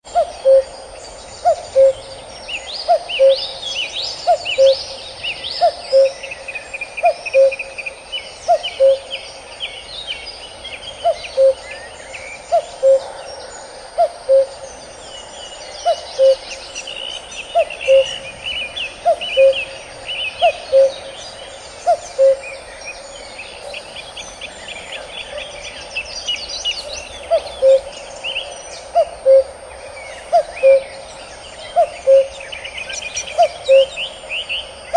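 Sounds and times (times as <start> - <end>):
cuckoo calling: 0.1 - 0.7, 1.4 - 2.2, 2.8 - 3.6, 4.2 - 5.0, 5.6 - 6.4, 7.0 - 7.8, 8.5 - 9.2, 11.0 - 11.8, 12.4 - 13.2, 14.0 - 14.7, 15.8 - 22.7, 26.8 - 28.0, 28.8 - 29.6, 30.3 - 31.0, 31.7 - 34.1
birds chirping: 0.1 - 34.9.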